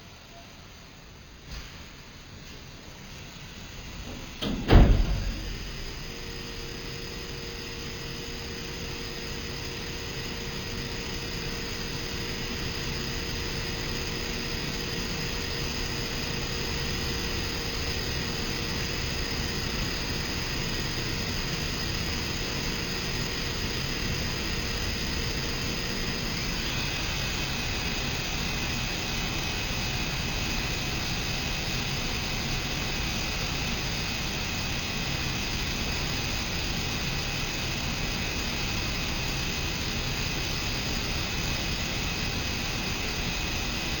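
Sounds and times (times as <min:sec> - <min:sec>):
machining center hiss and hum: 0:00.0 - 0:44.0
high-pitched machine whine: 0:03.4 - 0:44.0.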